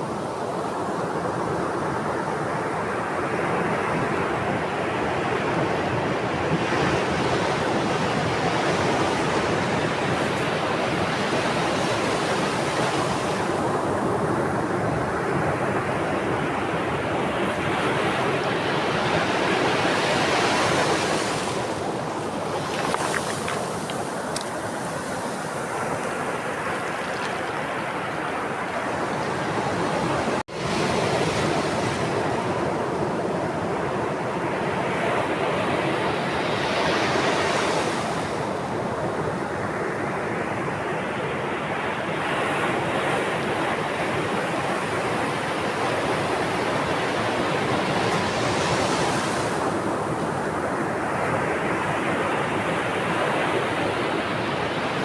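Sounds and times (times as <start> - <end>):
sea waves washing on shore: 6.0 - 38.8.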